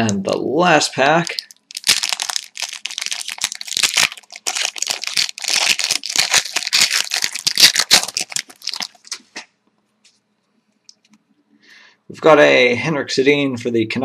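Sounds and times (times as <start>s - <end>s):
wrapper tearing and crinkling: 1.2s - 9.3s.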